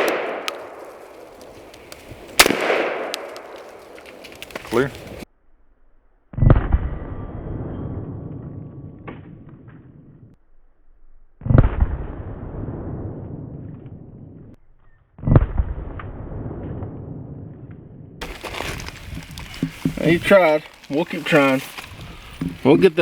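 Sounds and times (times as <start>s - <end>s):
shotgun shots: 0.0s - 0.9s, 2.4s - 3.9s
long rolling echo: 0.0s - 4.3s.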